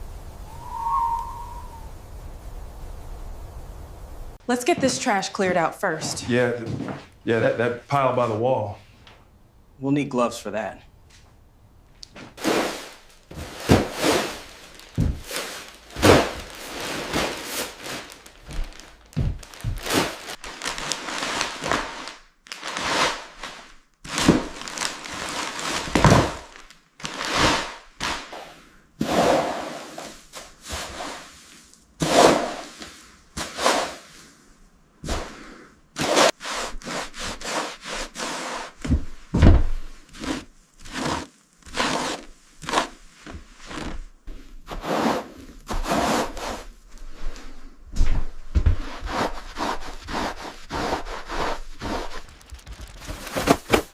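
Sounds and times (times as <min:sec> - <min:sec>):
trash being picked up and dragged: 0:12.2 - 0:20.4, 0:51.8 - 0:53.9.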